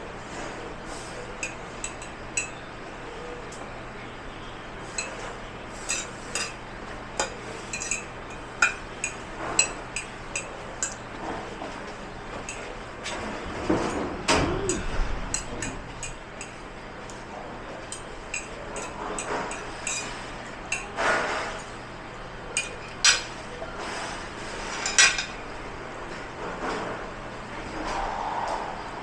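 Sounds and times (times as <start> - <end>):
dishes and cutlery clattering: 1.4 - 2.6, 4.9 - 6.6, 7.2 - 16.6, 17.9 - 21.8, 22.5 - 23.6, 24.6 - 25.4.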